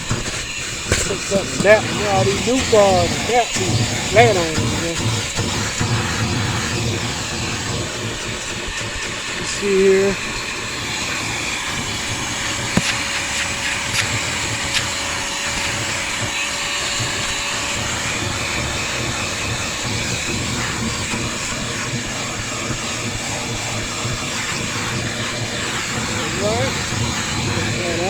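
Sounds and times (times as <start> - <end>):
vacuum cleaner running: 0.0 - 28.0.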